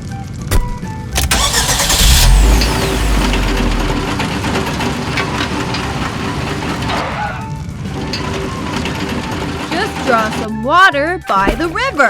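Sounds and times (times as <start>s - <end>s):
clicks: 1.1s - 10.5s
excavator engine rumbling: 1.1s - 10.6s.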